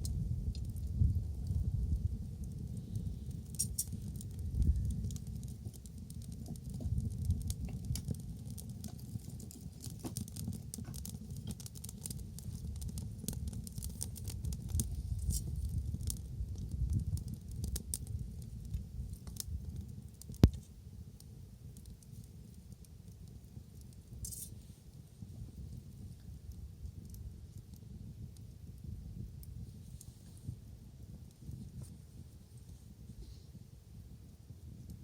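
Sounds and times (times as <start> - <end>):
low steady rumble: 0.0 - 5.8
bonfire crackling: 0.0 - 35.0.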